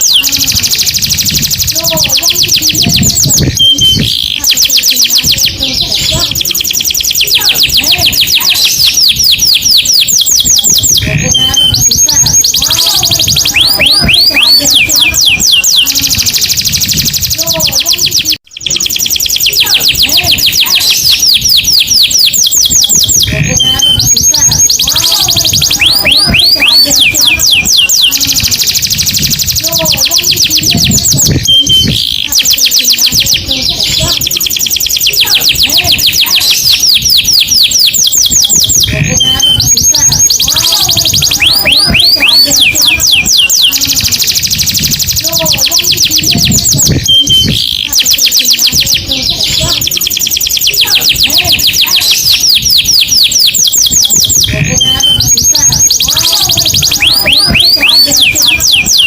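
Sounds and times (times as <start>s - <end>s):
canary singing trills: 0.0s - 59.0s.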